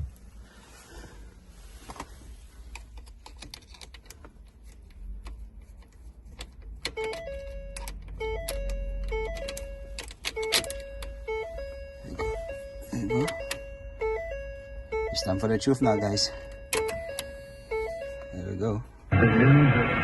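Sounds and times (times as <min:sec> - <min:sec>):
simple electronic tune: 0:11.2 - 0:20.0
low hum: 0:19.0 - 0:20.0.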